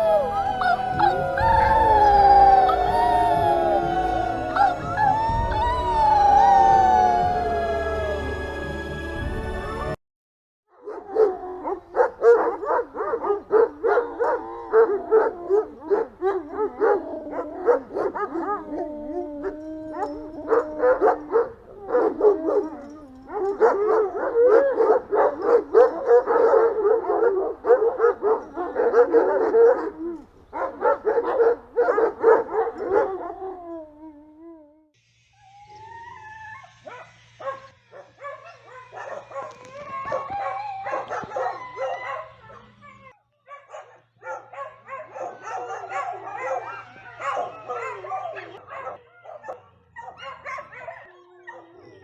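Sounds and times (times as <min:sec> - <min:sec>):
canines howling: 0:00.0 - 0:08.6, 0:10.8 - 0:43.2, 0:44.2 - 0:52.0
canines yipping: 0:36.5 - 0:52.0.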